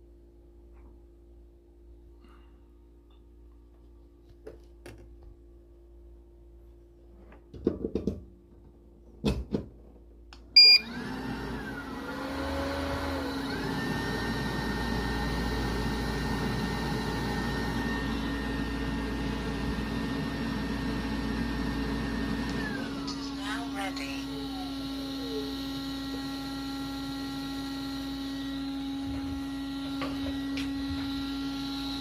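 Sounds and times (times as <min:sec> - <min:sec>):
short beep: 0:10.6 - 0:10.9
fans humming and whining: 0:10.6 - 0:32.0.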